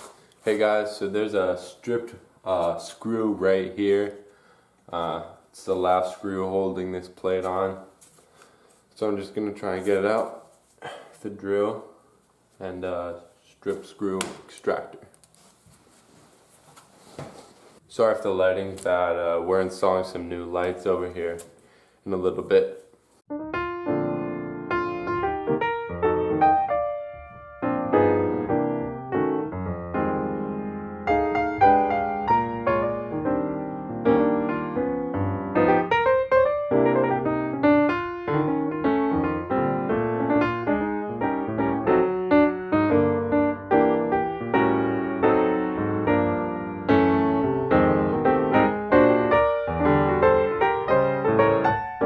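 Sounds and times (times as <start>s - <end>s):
piano music: 23.3s - 52.0s.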